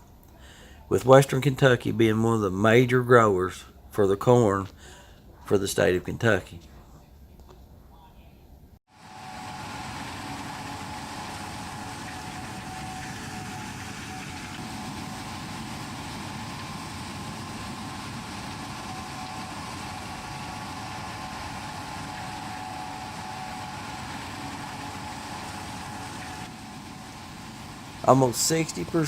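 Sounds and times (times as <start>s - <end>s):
combine harvester running: 8.9s - 29.0s.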